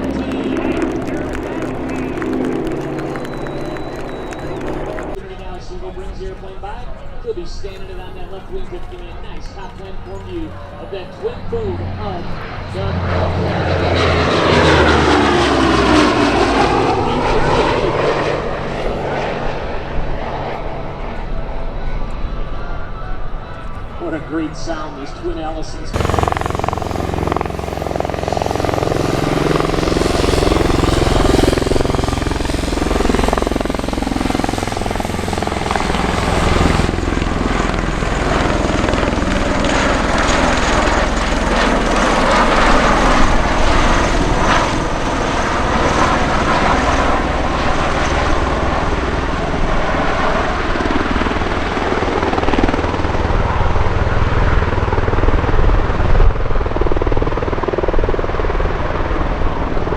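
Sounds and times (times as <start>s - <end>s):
aircraft engines droning: 0.0s - 59.9s.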